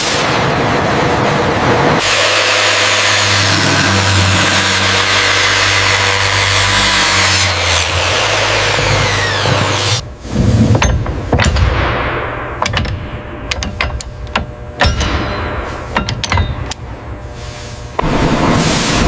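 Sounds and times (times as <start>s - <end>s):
loud steady rushing noise: 0.0s - 19.0s
low rumble: 9.0s - 19.0s
metal parts knocking and clanking: 10.7s - 12.0s, 12.6s - 16.9s.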